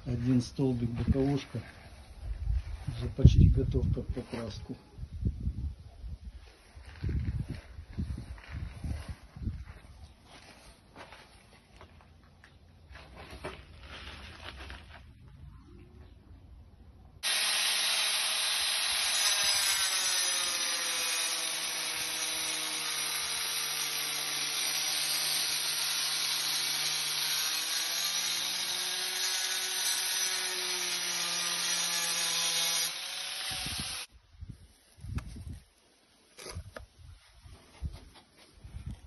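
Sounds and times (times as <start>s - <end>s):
electric power tool running: 17.2s - 34.1s.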